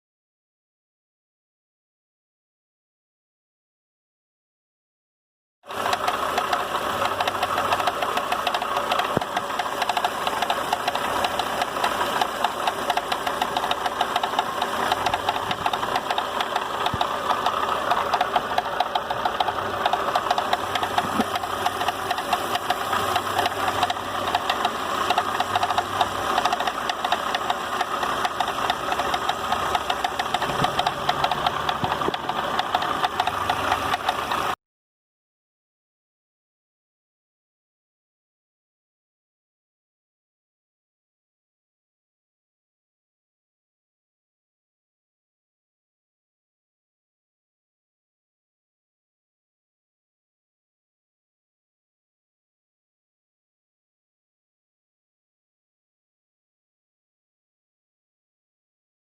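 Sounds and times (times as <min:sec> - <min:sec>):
engine running with knocking tick: 0:05.7 - 0:34.6.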